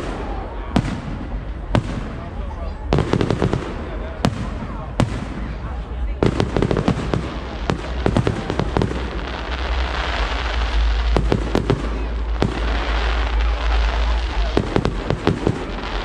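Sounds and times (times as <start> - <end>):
firework bangs: 0.0 - 16.0
deep rumble: 1.0 - 16.0
crackling hiss: 6.2 - 16.0.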